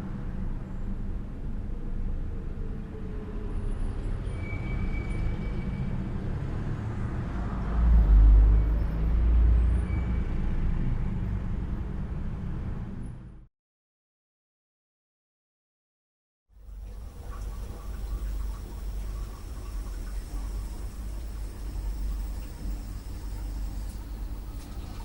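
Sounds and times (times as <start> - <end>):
high squeal: 4.2 - 5.9, 9.8 - 10.4
low mechanical rumble: 16.6 - 25.0.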